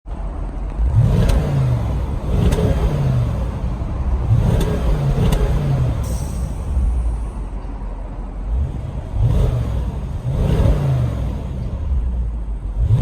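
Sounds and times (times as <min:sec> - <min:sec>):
car engine revving from idle: 0:00.8 - 0:07.4, 0:08.4 - 0:13.0.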